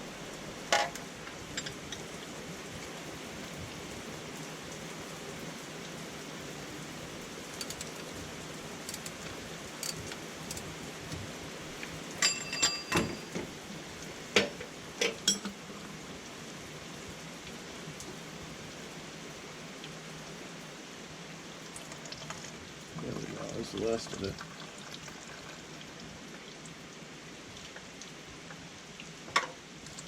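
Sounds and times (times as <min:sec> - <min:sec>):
sharp metal clinks: 0:12.2 - 0:13.4
oil draining into a pan: 0:21.7 - 0:26.8.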